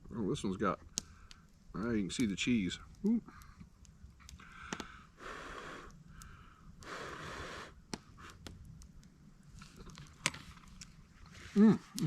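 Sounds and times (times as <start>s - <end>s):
breathy puffs of air: 4.4s - 8.5s.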